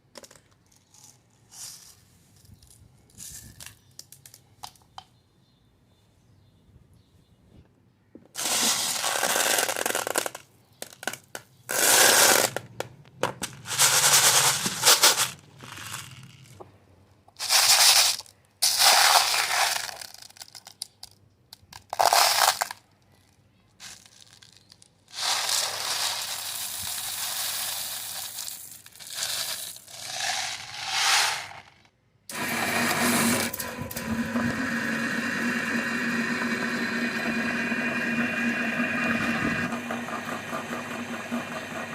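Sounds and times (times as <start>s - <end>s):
meat grinder grinding: 32.3s - 41.9s
motor humming: 32.3s - 41.9s.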